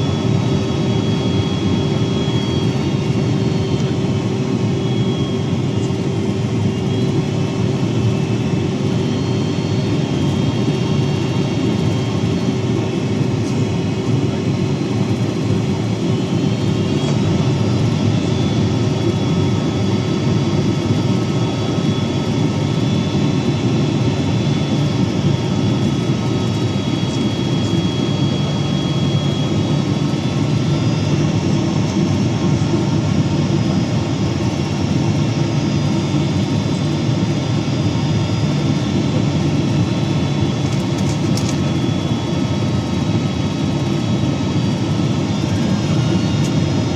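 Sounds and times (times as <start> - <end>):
airliner cabin engine rumble: 0.0 - 46.9.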